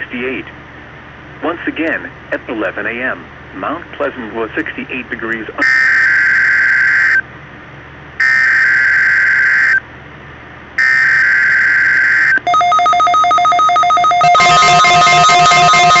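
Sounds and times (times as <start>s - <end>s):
rapid pulsed alarm beeping: 5.6s - 7.2s, 8.2s - 9.8s, 10.8s - 16.0s
screechy digital data tones: 5.6s - 7.2s, 8.2s - 9.8s, 10.8s - 16.0s.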